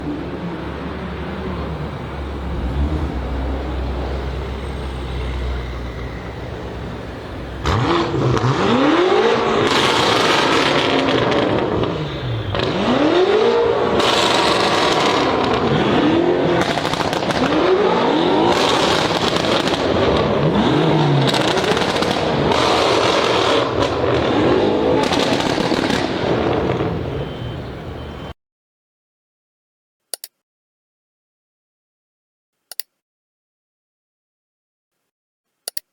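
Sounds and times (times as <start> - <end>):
car exhaust revving: 6.8 - 27.4
exhaust crackles and pops: 7.6 - 27.2.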